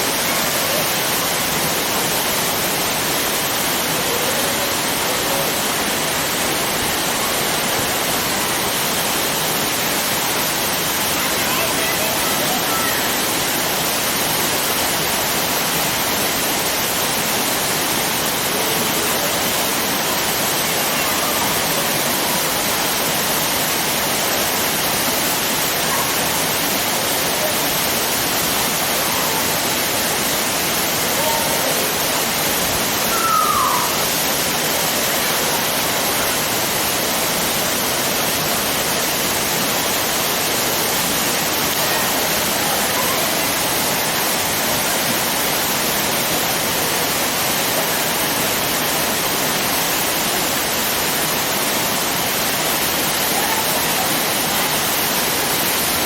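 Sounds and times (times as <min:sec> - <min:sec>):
waterfall roaring: 0:00.0 - 0:56.0.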